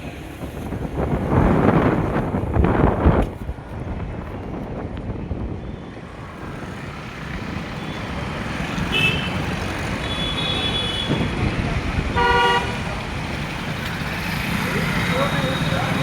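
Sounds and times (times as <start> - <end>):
traffic engine and road noise: 0.0 - 16.0
vehicle horns honking: 8.8 - 11.3, 12.1 - 12.9
low horn blast: 12.1 - 12.9.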